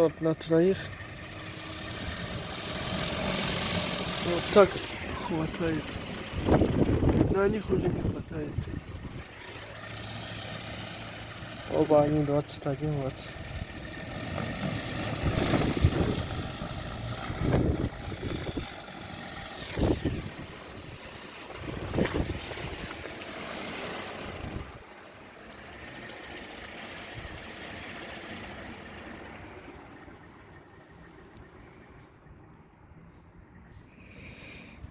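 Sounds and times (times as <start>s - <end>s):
gusty wind on microphone: 6.0s - 9.4s, 14.6s - 18.8s, 19.4s - 23.1s, 24.2s - 24.8s.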